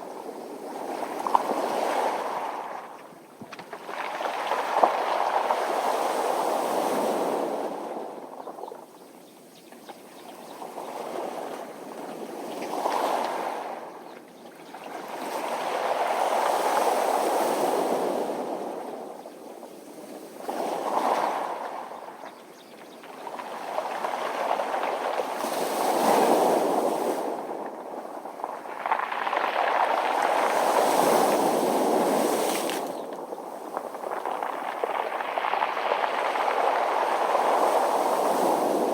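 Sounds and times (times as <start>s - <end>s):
sea waves washing on beach: 0.0s - 8.7s, 14.7s - 38.9s.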